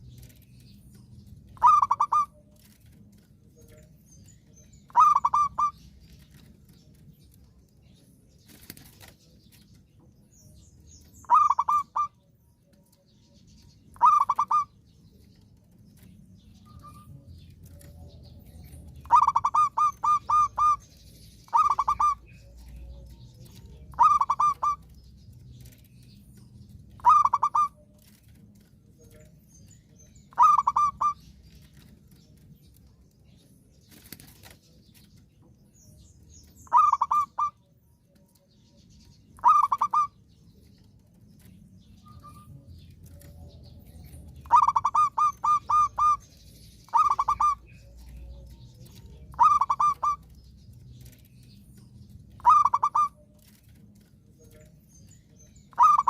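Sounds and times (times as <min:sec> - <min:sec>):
dove cooing: 0:01.5 - 0:02.9, 0:04.9 - 0:06.5, 0:11.2 - 0:12.2, 0:14.0 - 0:14.8, 0:18.6 - 0:25.0, 0:26.9 - 0:28.2, 0:30.3 - 0:31.9, 0:36.7 - 0:37.6, 0:39.4 - 0:40.1, 0:44.3 - 0:46.3, 0:46.9 - 0:50.4, 0:52.4 - 0:53.6, 0:55.7 - 0:56.0.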